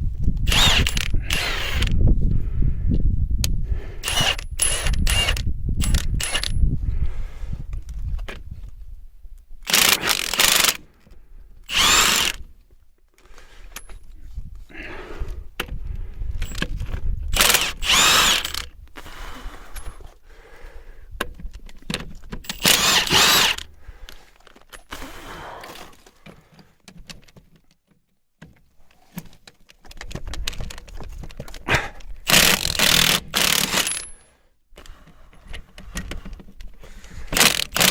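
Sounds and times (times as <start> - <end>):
impact wrench hammering: 22.5 - 23.6.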